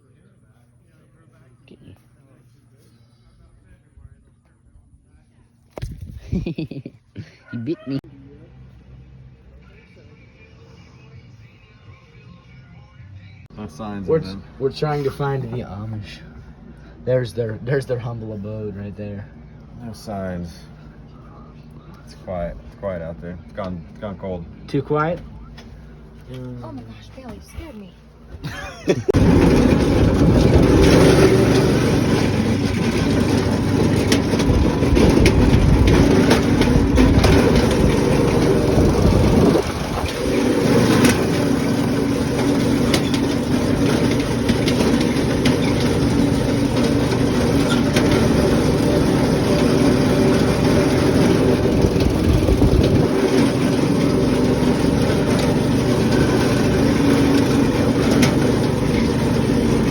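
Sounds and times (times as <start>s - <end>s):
engine running loudly: 28.9s - 59.9s.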